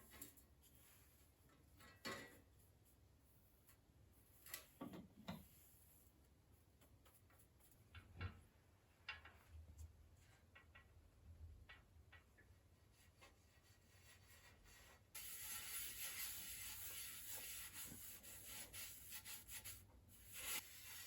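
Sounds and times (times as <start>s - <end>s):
faint clicks and light knocks: 6.8s - 12.5s.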